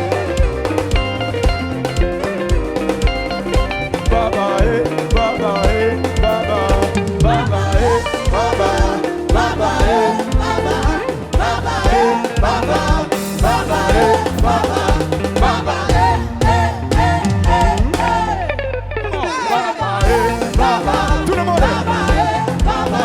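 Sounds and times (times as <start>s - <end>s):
live gospel band playing: 0.0s - 18.8s, 19.5s - 23.0s.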